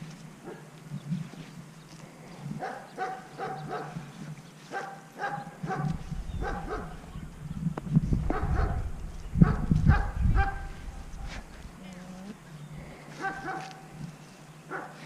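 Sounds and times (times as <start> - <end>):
wind rumbling on microphone: 0.0 - 4.4, 5.2 - 14.3
dog barking: 2.6 - 4.0, 4.7 - 7.0, 8.3 - 8.8, 9.4 - 10.8, 13.2 - 13.9, 14.7 - 15.0.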